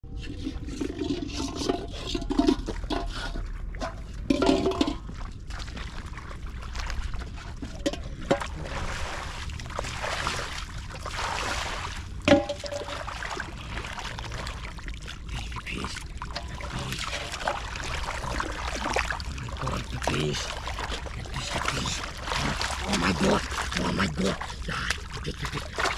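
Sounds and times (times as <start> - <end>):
pond water sloshing and trickling: 0.0 - 25.9
sharp water splashes: 0.7 - 25.9.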